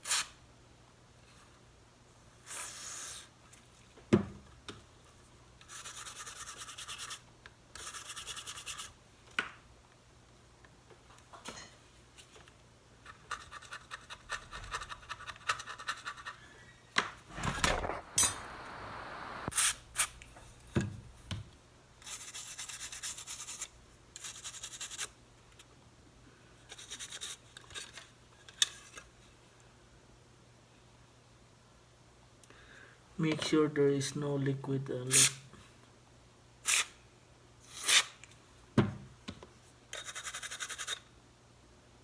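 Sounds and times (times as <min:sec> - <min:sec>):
aerosol spray hissing: 0:17.3 - 0:20.3.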